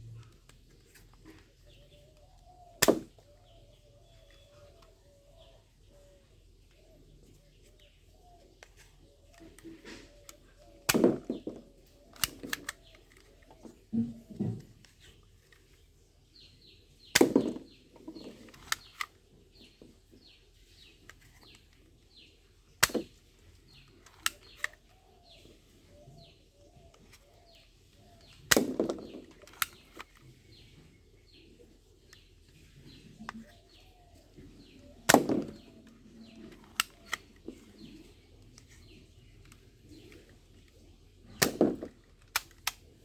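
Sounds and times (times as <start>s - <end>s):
small bird chirping: 0.0s - 13.8s
toy gun firing sharp snaps: 2.8s - 3.2s
toy gun mechanism clicks: 12.1s - 13.5s, 18.4s - 19.2s, 24.0s - 25.0s, 29.4s - 30.2s, 36.3s - 37.5s, 41.4s - 42.9s.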